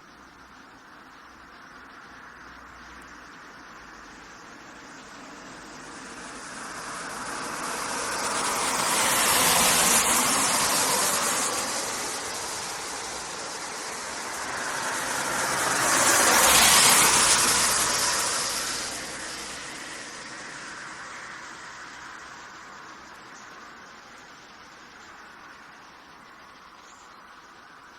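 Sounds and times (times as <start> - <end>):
road traffic passing: 1.3 - 27.9.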